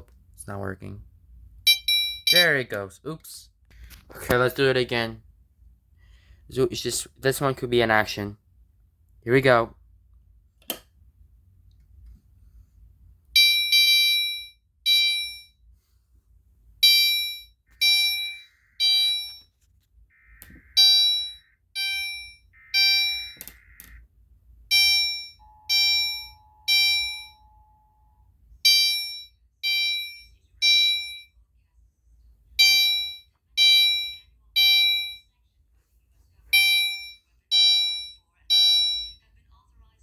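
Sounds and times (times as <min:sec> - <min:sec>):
fire alarm horn beeping: 0:16.8 - 0:24.0, 0:24.7 - 0:31.3, 0:32.6 - 0:35.2, 0:36.5 - 0:39.2.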